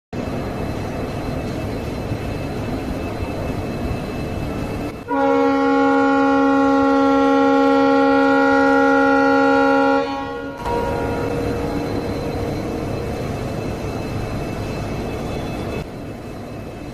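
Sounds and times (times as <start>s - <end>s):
diesel locomotive engine humming: 0.2s - 16.9s
locomotive air horn: 5.1s - 12.0s.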